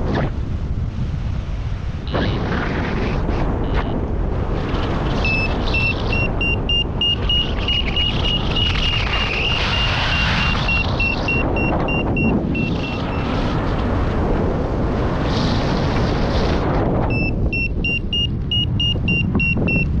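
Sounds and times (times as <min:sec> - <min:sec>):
wind rush on microphone: 0:00.0 - 0:20.0
variometer beeping: 0:05.2 - 0:08.8, 0:10.6 - 0:13.3, 0:17.1 - 0:20.0.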